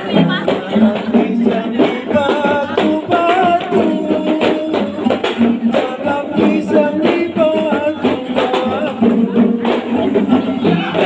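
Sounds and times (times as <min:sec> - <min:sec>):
hand percussion beat: 0:00.0 - 0:11.0.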